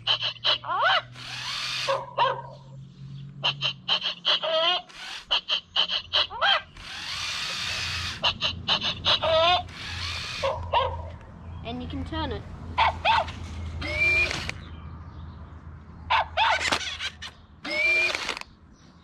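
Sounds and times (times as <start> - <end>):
toy robot gear motors whirring: 0.0 - 2.1, 3.5 - 10.7, 13.1 - 14.6, 16.4 - 18.5
electronic barks and yips: 0.0 - 2.8, 3.4 - 11.2, 12.8 - 14.6, 16.1 - 18.4.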